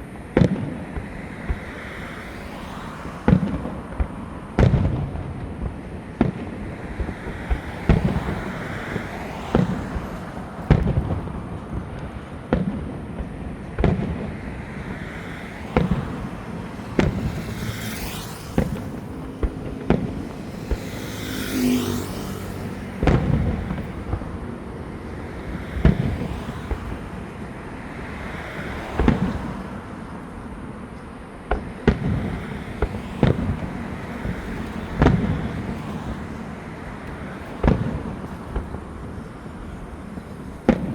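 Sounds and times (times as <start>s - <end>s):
fireworks banging: 3.2s - 40.9s
fireworks hissing crackles: 3.2s - 40.9s.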